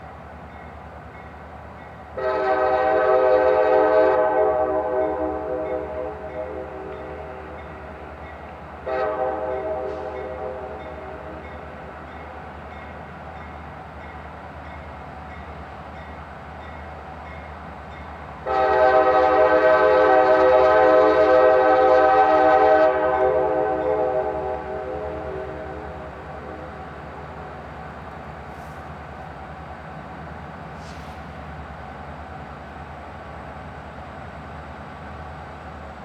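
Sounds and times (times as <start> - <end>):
locomotive air horn blasts: 2.1 - 7.6, 8.8 - 11.4, 18.4 - 26.9.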